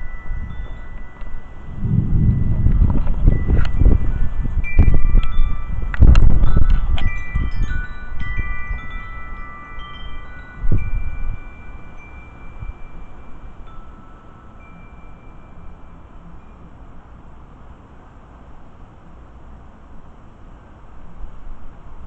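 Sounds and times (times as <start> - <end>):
strong wind gusts rumbling: 0.0 - 7.8
wind chimes jangling: 0.0 - 16.7.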